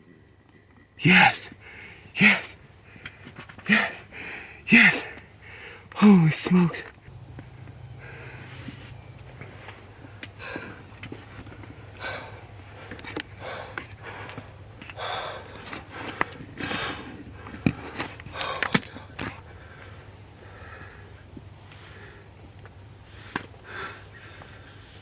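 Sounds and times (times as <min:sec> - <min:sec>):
man breathing hard and sniffing: 0:01.0 - 0:06.8, 0:08.0 - 0:21.2, 0:23.0 - 0:25.0.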